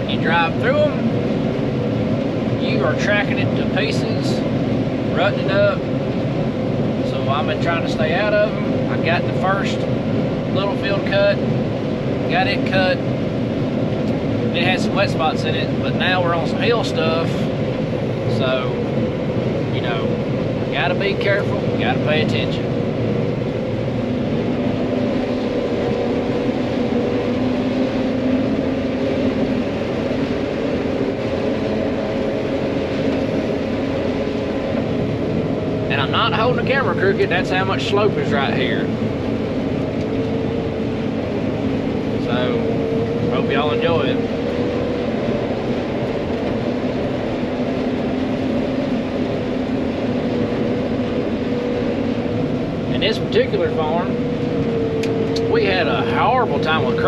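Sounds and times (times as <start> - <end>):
combine harvester running: 0.0 - 57.0.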